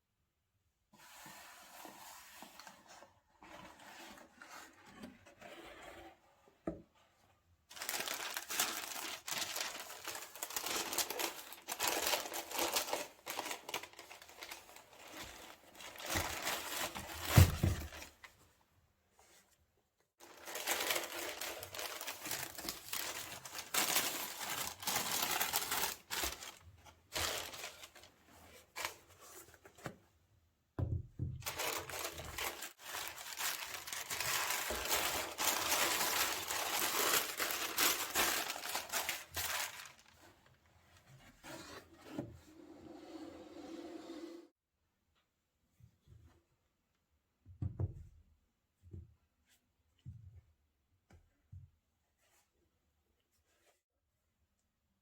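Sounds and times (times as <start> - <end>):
paper packaging rustling: 7.7 - 18.3, 20.2 - 29.9, 31.4 - 40.4.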